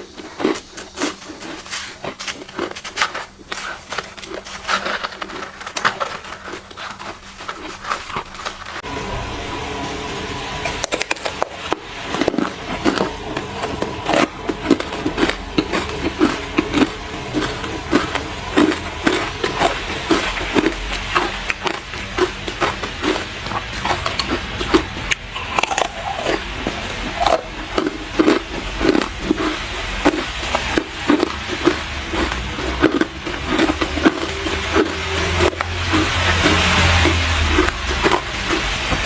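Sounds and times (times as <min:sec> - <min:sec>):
ice crunching: 0:00.0 - 0:08.8.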